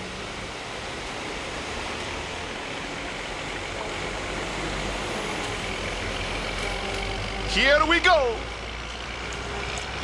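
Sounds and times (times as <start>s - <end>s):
construction machinery rushing noise: 0.0s - 10.0s.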